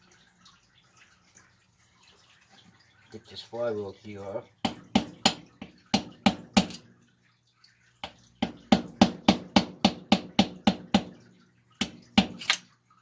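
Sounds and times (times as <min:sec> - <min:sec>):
metal-on-metal taps: 0:04.6 - 0:06.9, 0:11.8 - 0:12.7.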